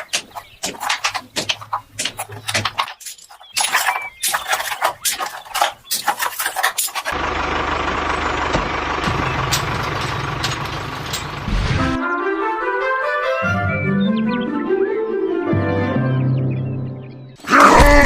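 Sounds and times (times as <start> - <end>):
rapid irregular clicks and knocks: 0.0 - 7.2, 8.4 - 11.5.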